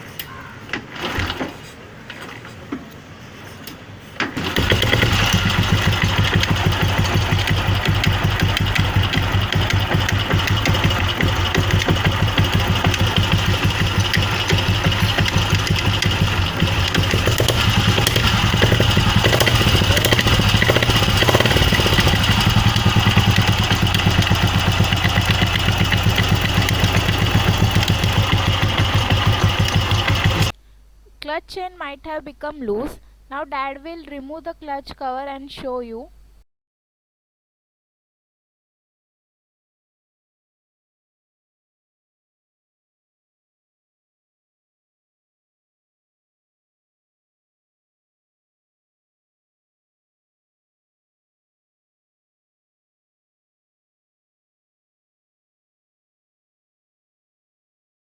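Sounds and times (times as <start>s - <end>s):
clutch noise: 3.6s - 31.4s
motorcycle engine running: 4.4s - 30.6s.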